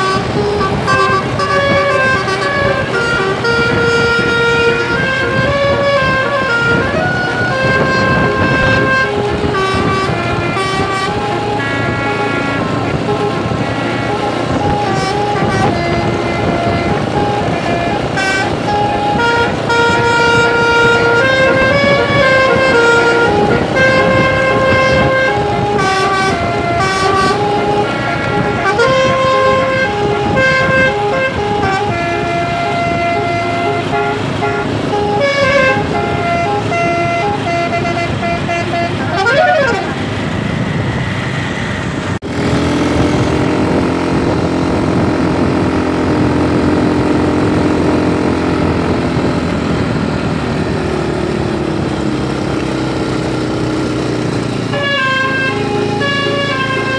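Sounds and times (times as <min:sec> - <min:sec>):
musical bus horn playing a tune: 0:00.0 - 0:41.0, 0:53.2 - 0:56.9.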